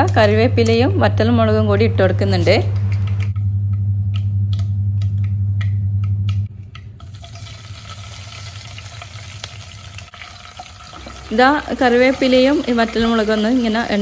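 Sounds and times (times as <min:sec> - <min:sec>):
steady low hum: 0:00.0 - 0:07.2
leaves and chillies sizzling in oil: 0:07.1 - 0:14.0.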